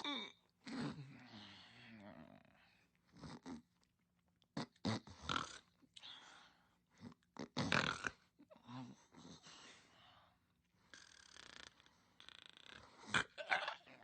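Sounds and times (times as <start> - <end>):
sleeping pet snoring and snorting: 3.1 - 3.7, 4.6 - 5.8, 7.0 - 9.5, 10.9 - 14.0.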